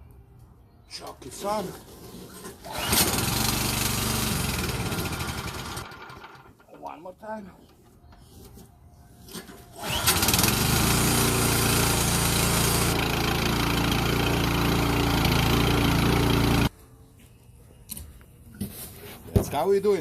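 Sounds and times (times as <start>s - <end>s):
snowblower engine running: 2.7s - 6.5s, 9.8s - 16.7s.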